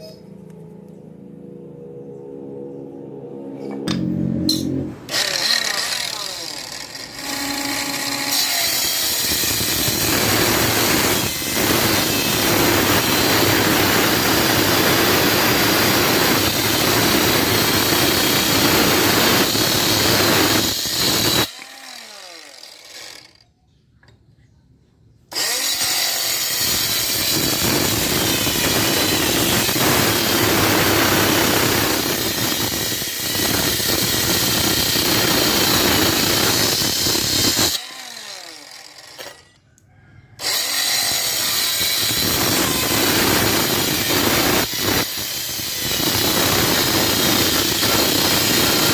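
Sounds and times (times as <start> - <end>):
circular saw cutting wood: 3.3 - 23.5, 25.3 - 39.6, 40.3 - 48.9.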